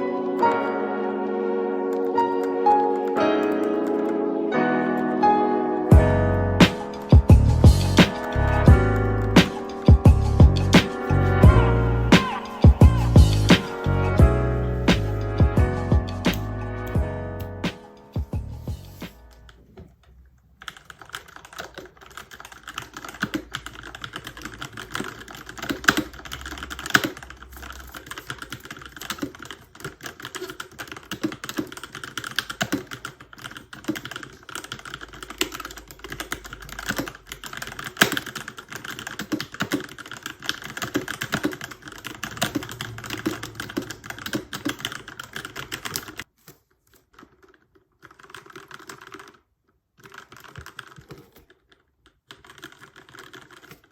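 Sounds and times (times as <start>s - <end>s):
mechanical keyboard typing: 1.8s - 4.2s, 6.6s - 14.2s, 20.4s - 46.3s, 46.9s - 53.9s.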